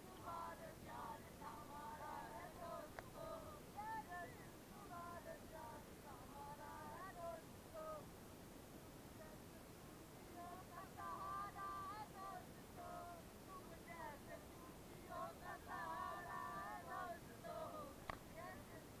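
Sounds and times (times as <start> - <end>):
low steady background noise: 0.0 - 19.0.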